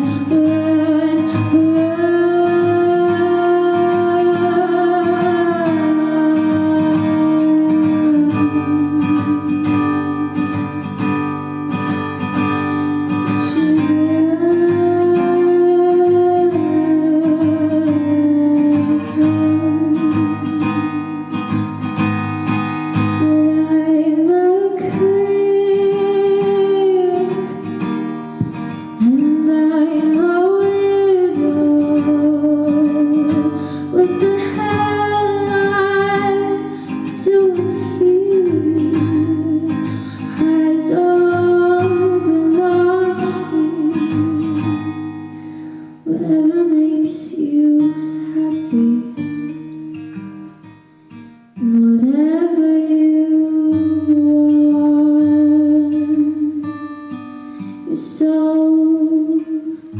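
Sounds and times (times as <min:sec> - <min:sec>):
woman singing long notes: 0:00.0 - 0:10.8, 0:13.4 - 0:21.4, 0:29.0 - 0:45.1, 0:51.6 - 0:56.8
strummed acoustic guitar: 0:00.0 - 0:59.9.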